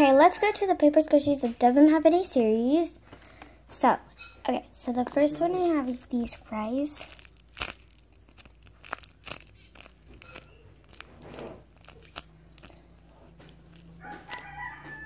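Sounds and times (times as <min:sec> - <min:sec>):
paper crinkling and crunching: 0:06.1 - 0:14.9.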